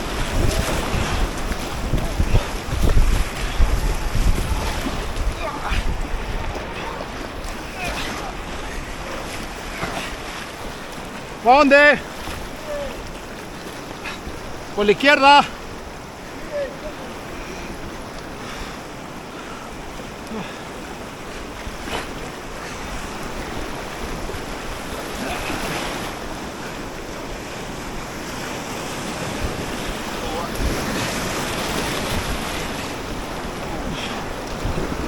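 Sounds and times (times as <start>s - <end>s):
wind buffeting microphone: 0.0s - 11.1s, 21.5s - 35.0s
river rapid rushing: 0.0s - 35.0s.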